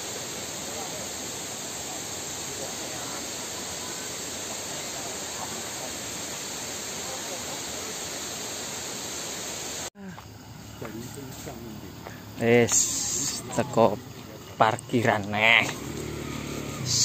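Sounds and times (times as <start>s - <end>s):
faint voices: 10.0s - 15.9s.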